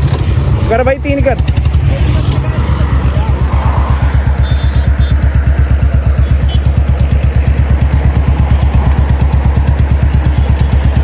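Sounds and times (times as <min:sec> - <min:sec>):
single-cylinder motorcycle engine thumping: 0:04.4 - 0:11.0.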